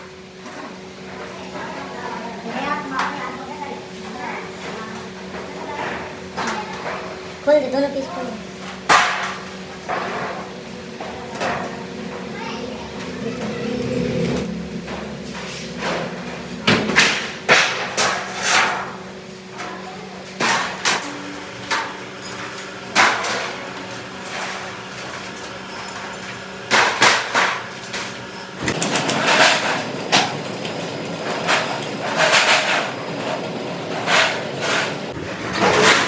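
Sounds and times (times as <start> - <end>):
knocks and clatter of parts: 24.3 - 36.0
low machine hum: 28.6 - 35.2.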